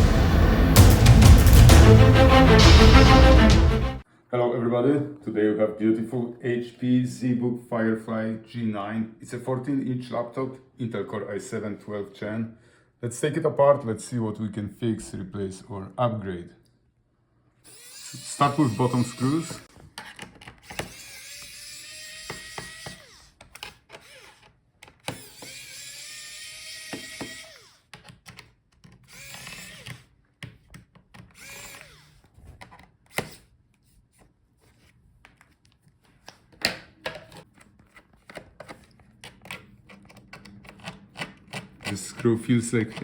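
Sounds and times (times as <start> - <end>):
electric screwdriver spinning: 17.7 - 19.7, 20.6 - 27.9, 29.0 - 30.1, 31.3 - 32.3.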